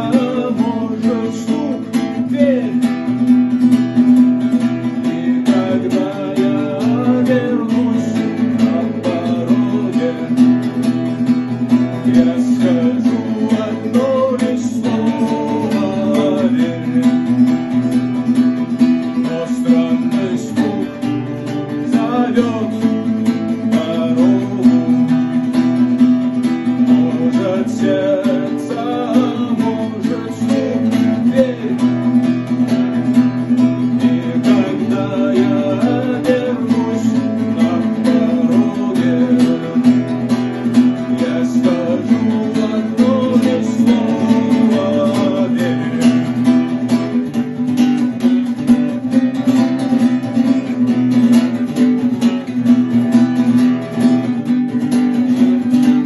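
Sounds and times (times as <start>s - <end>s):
acoustic guitar playing: 0.0s - 56.0s.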